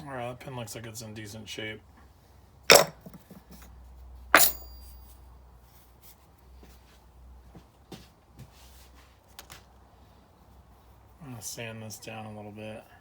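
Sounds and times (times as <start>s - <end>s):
metal part clinking on bench: 2.7s - 3.7s, 4.4s - 5.1s.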